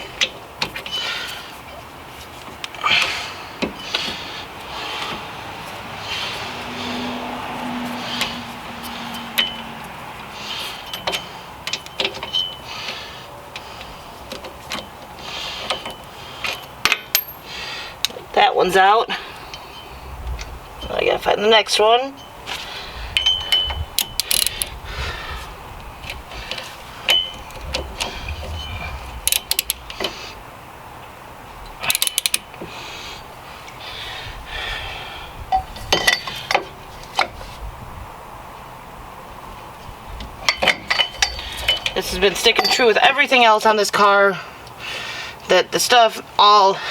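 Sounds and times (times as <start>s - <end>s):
steady low hum: 22.7s - 35.8s
ratchet clicking: 24.0s - 24.7s, 29.2s - 30.0s, 31.8s - 32.5s.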